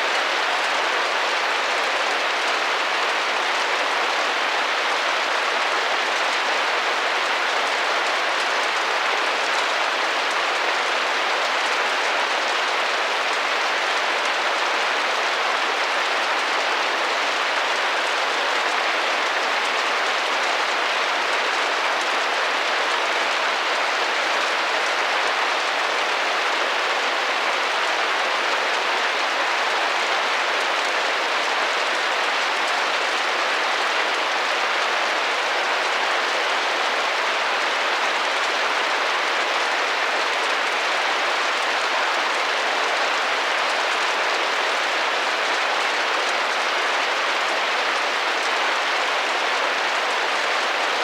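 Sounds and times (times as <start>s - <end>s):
rain pattering on a window: 0.0s - 51.0s.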